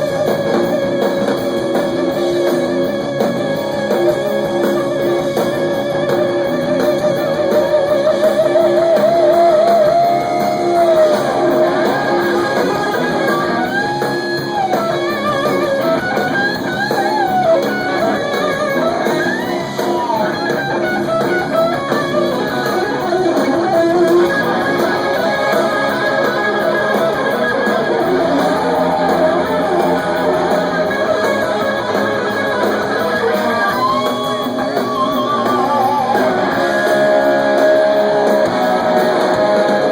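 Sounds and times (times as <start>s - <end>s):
electric guitar solo with vibrato: 0.0s - 39.9s
live rock band: 0.0s - 39.9s.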